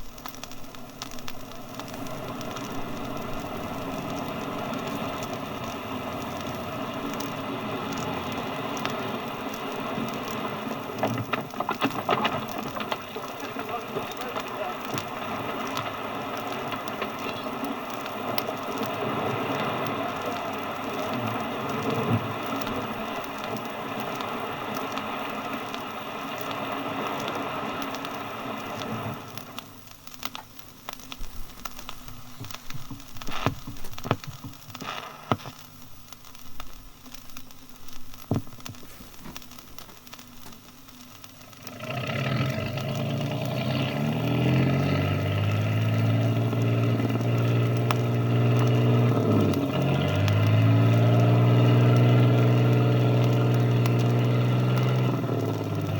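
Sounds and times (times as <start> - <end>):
boat engine running: 0.0 - 29.4, 41.4 - 55.9
steady noisy running sound: 0.0 - 55.9
knocks and clicks: 32.4 - 35.5.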